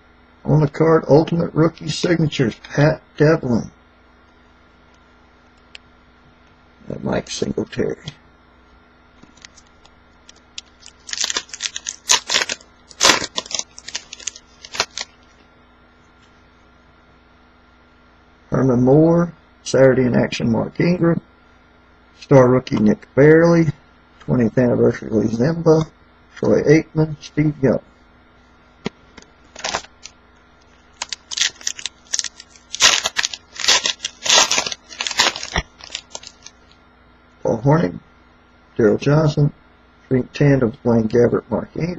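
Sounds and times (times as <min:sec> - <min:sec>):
cards rustling and clicking: 0:09.3 - 0:15.2, 0:29.5 - 0:30.1, 0:31.0 - 0:36.8
foil wrapper tearing and crinkling: 0:10.6 - 0:15.2, 0:29.5 - 0:30.1, 0:30.9 - 0:36.8.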